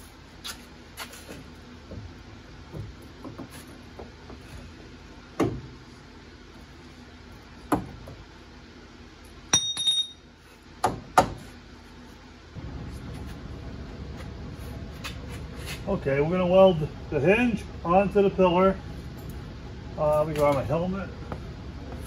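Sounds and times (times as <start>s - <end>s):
ringing metal clink: 9.5s - 10.3s
metal tools clanking: 9.6s - 10.2s.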